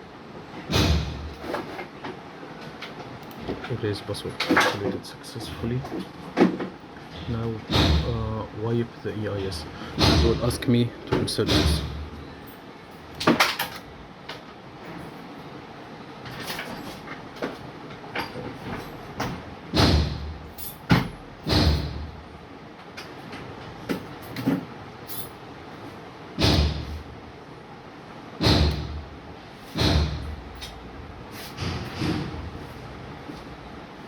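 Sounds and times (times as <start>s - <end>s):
objects thumping on workbench: 29.7s - 30.3s.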